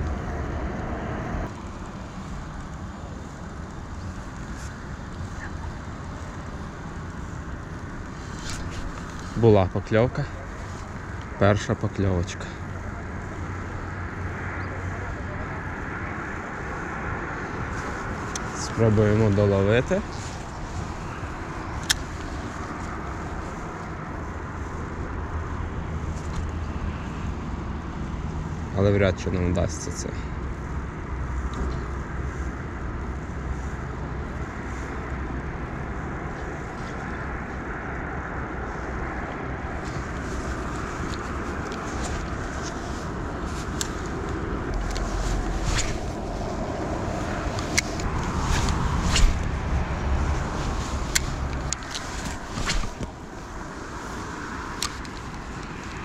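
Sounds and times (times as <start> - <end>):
outdoor rumble: 0.0 - 56.0
wind on microphone: 38.5 - 56.0.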